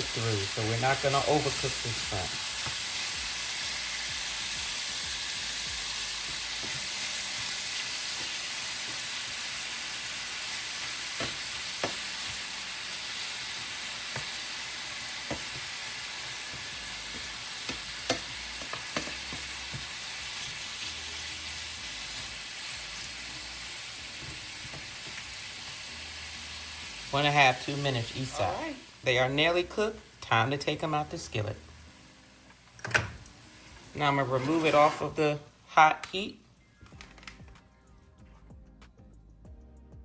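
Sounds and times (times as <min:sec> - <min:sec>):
shrimp sizzling in oil: 0:00.0 - 0:35.6
utensil clicking on pan: 0:13.2 - 0:20.8.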